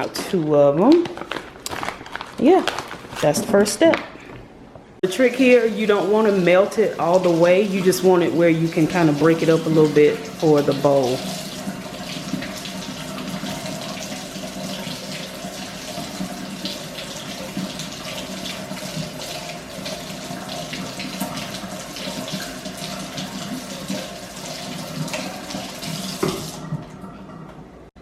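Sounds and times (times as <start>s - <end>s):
tap water splashing into sink: 7.0s - 27.1s.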